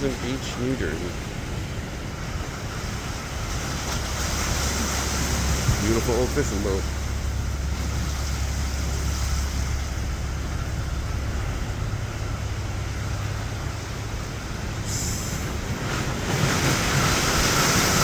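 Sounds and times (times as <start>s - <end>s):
boat engine rumble: 0.0s - 18.0s
water noise: 0.0s - 18.0s
wind: 0.0s - 18.0s.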